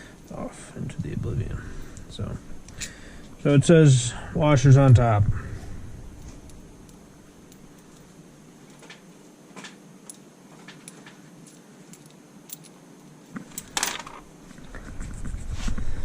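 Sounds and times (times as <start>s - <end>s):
metal washers and nuts clinking: 6.2s - 14.3s.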